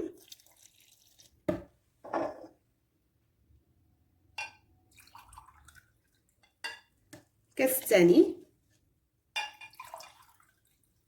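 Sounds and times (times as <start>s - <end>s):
water pouring into blender jar: 0.0s - 1.6s, 4.9s - 6.3s, 9.6s - 11.0s
glass clink: 4.4s - 4.6s, 9.4s - 9.8s.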